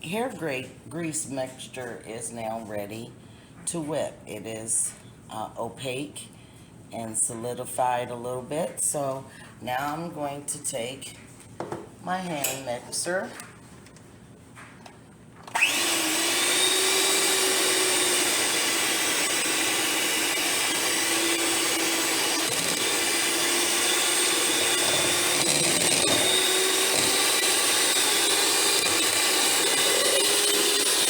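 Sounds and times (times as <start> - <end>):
electric hand mixer running: 15.5 - 31.0.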